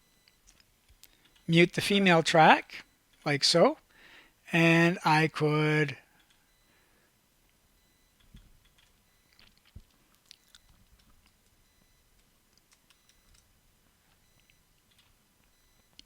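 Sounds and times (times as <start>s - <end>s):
faint room hiss: 0.0s - 16.0s
computer mouse clicks: 12.2s - 13.5s.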